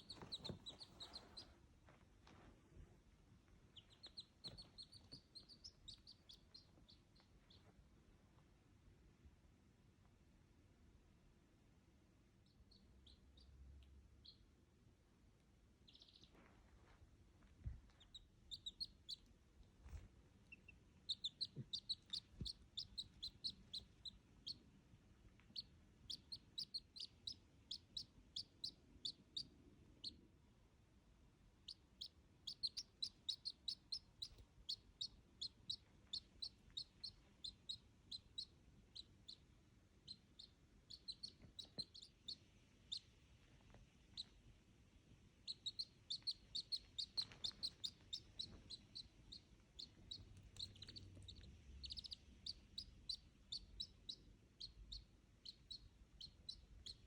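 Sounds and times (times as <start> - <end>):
duckling peeping: 0.0 - 1.6, 3.7 - 7.7, 12.4 - 13.6, 14.2 - 14.5, 15.8 - 16.4, 17.8 - 24.7, 25.3 - 30.2, 31.6 - 43.2, 44.1 - 44.4, 45.4 - 57.0.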